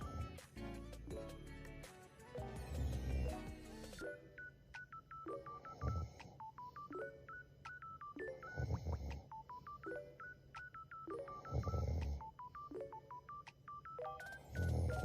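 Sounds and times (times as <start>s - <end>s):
electronic beeping tune: 3.9s - 15.0s
woman snoring: 8.4s - 9.3s, 11.3s - 12.3s.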